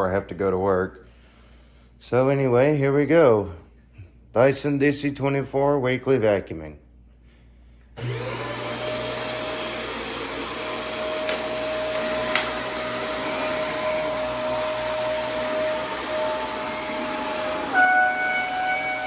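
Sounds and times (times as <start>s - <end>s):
vacuum cleaner motor whining: 8.0s - 19.0s.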